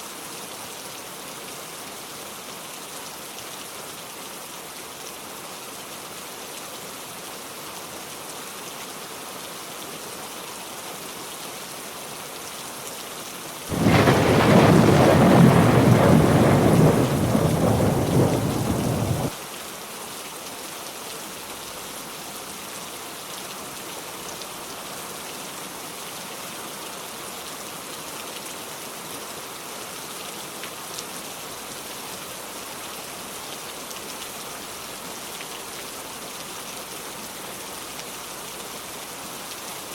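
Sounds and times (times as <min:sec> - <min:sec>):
heavy rain falling: 0:13.7 - 0:19.4
thunder rumbling: 0:13.7 - 0:19.4.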